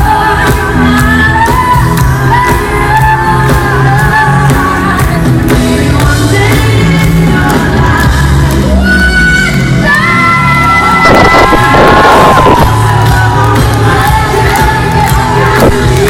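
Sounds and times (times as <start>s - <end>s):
rock band playing: 0.0s - 16.0s
woman singing: 0.0s - 16.0s.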